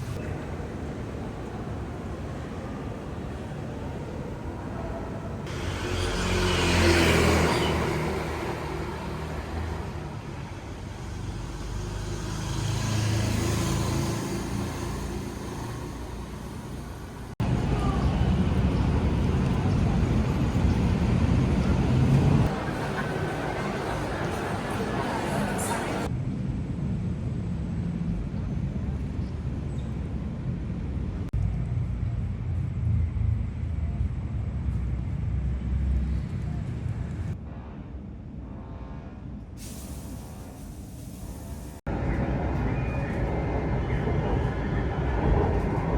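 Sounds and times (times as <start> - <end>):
background traffic: 0.0 - 45.9
motor vehicle passing: 5.5 - 9.9, 11.0 - 26.1
low outdoor park rumble: 15.4 - 39.5.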